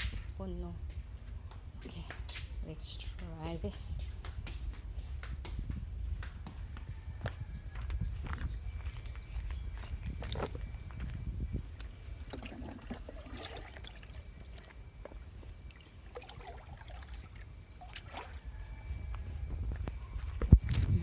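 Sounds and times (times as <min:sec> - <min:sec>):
water trickling and splashing: 0:12.2 - 0:18.5.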